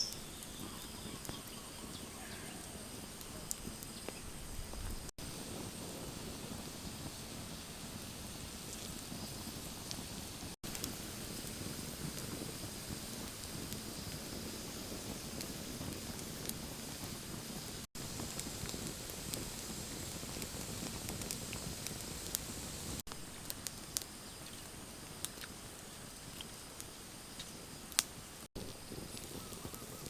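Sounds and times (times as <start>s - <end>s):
steady outdoor hiss: 0.0s - 30.0s
small clicks and crackles: 8.6s - 17.2s, 17.8s - 30.0s.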